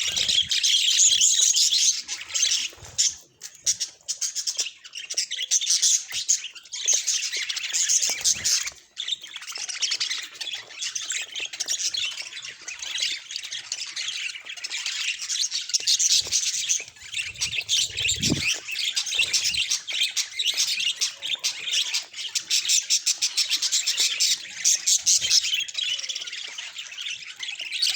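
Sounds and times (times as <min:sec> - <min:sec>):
budgerigars chattering: 0:00.0 - 0:27.9.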